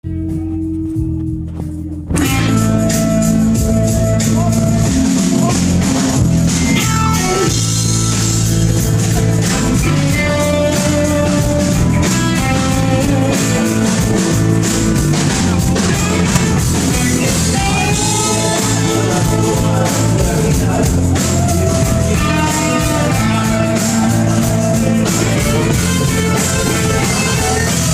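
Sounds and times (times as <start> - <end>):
guitars: 0.0 - 27.9
live rock band: 0.1 - 27.9
person singing: 16.1 - 27.9.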